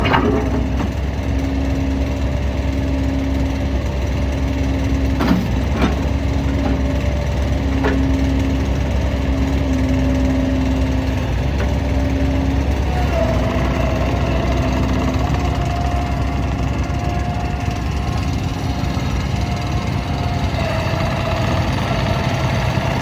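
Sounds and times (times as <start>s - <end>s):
loader engine running: 0.0s - 23.0s.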